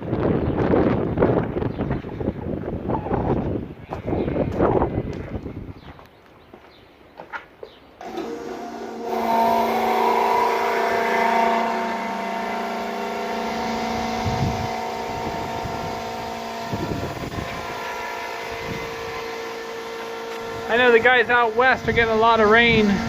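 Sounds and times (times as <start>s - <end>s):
motor whining: 8.0s - 23.0s.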